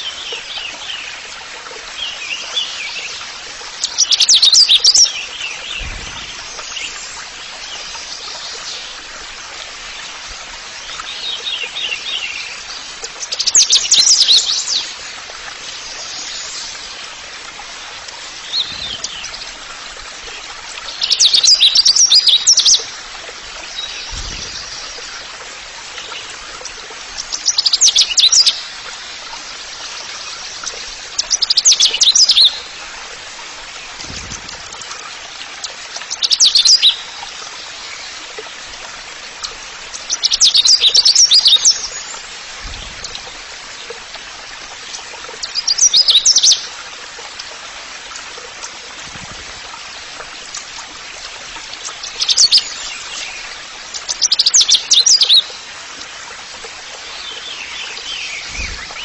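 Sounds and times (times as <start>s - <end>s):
songbird singing: 2.0s - 10.2s, 17.8s - 32.9s, 33.7s - 46.8s, 50.5s - 55.7s, 57.0s - 59.0s.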